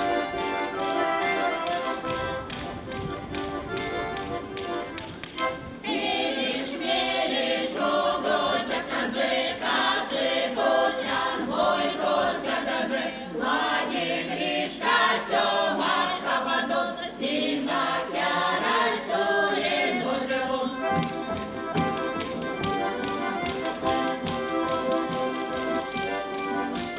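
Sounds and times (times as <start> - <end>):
choir singing: 5.8 - 21.4.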